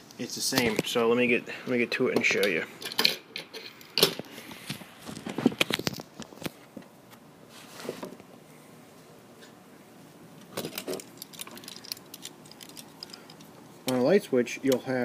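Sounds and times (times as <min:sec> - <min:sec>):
clicks and rattles of small hardware: 0:02.2 - 0:04.3, 0:10.4 - 0:14.0.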